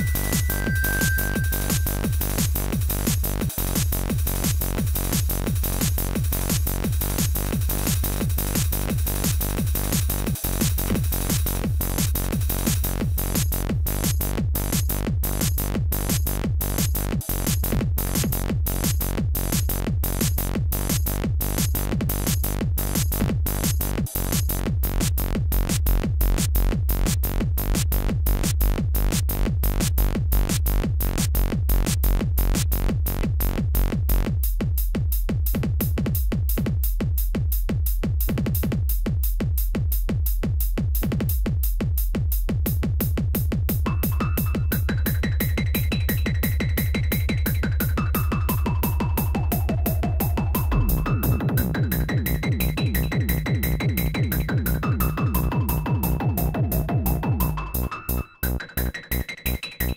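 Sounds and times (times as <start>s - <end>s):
thin high held tone: 0.0s - 2.3s
high electronic ticks: 0.0s - 13.0s, 43.9s - 59.9s
held bass line: 0.0s - 34.8s, 42.6s - 59.9s
techno kick drum beat: 0.0s - 59.9s
low pitch-dropping notes: 43.9s - 59.9s.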